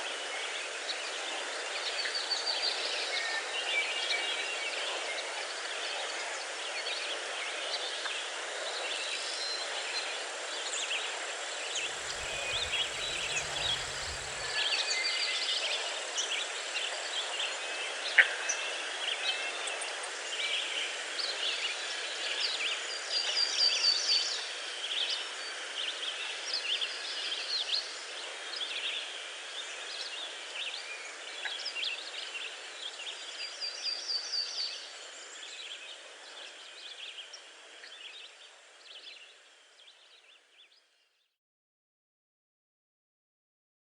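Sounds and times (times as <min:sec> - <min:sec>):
songbirds chirping: 0:11.8 - 0:14.6
waterfall rushing: 0:11.8 - 0:14.6.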